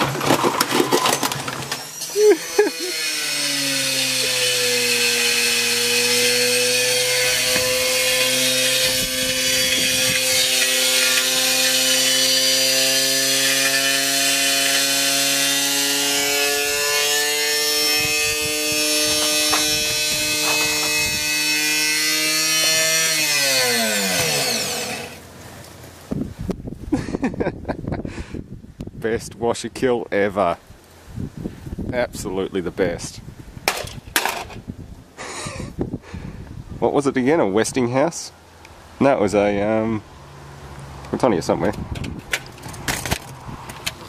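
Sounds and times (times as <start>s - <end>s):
rattling knocks: 18.1s - 25.0s.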